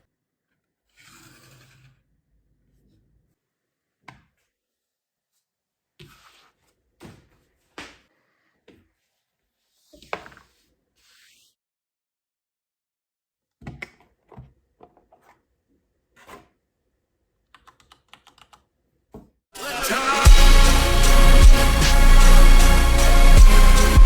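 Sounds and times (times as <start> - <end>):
music: 19.6 - 24.0.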